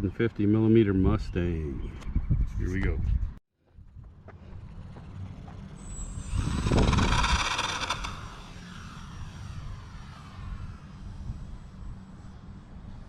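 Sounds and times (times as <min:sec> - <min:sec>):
wind rumble on microphone: 0:00.9 - 0:08.3, 0:09.2 - 0:13.0
model plane propeller whining: 0:04.6 - 0:13.0.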